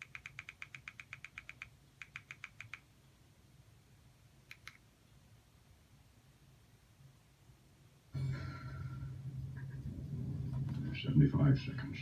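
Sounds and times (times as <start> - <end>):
rapid remote button clicks: 0.0 - 2.8, 4.5 - 4.8
faint low hum: 0.0 - 12.0.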